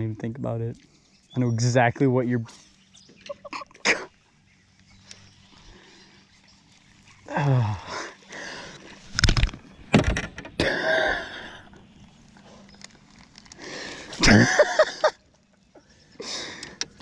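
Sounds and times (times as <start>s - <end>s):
man groaning: 7.3s - 8.2s, 10.6s - 11.6s
breathy gasping laugh: 10.6s - 11.7s, 14.0s - 15.2s.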